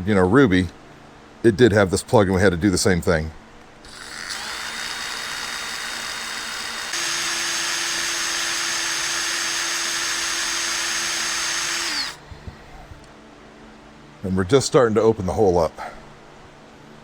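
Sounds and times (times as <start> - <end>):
electric drill drilling: 3.9 - 12.2.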